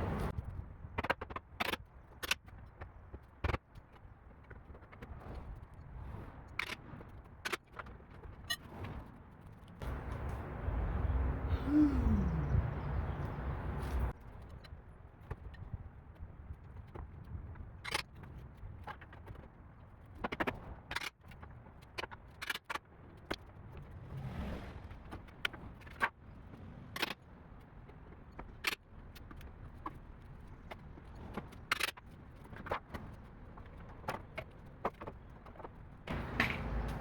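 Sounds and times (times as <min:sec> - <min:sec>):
low background rumble: 0:09.8 - 0:14.2.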